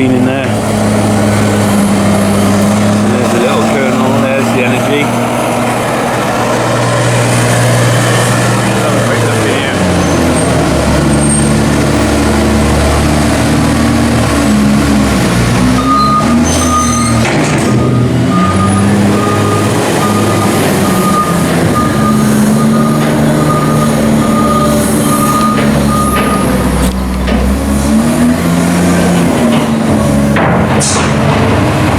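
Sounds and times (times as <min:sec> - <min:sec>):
heavy vehicle engine running: 0:00.0 - 0:31.9
reversing alarm beeping: 0:15.7 - 0:26.9.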